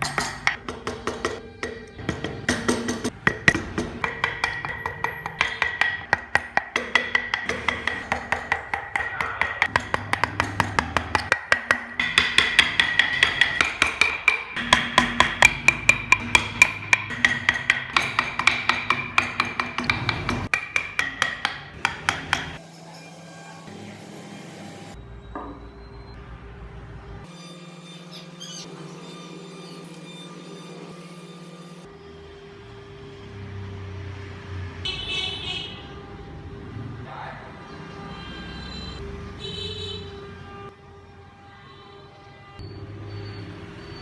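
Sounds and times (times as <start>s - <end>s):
music with clicking beat: 0.1s - 22.6s.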